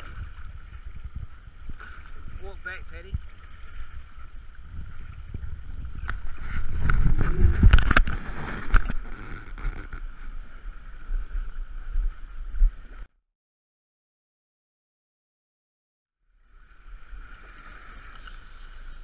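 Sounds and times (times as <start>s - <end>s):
wind rumbling on microphone: 0.0s - 13.1s.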